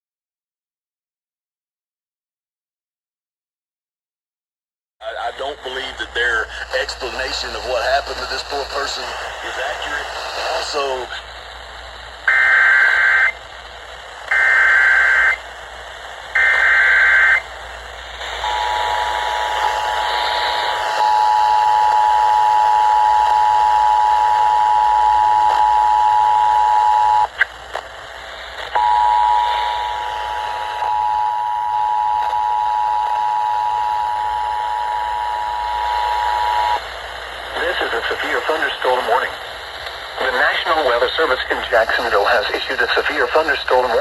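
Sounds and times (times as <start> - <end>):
radio hiss: 5.0 - 44.0.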